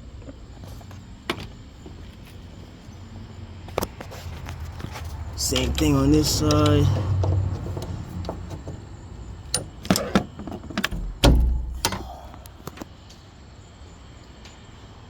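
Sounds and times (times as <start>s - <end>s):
dull thud: 9.6s - 12.4s.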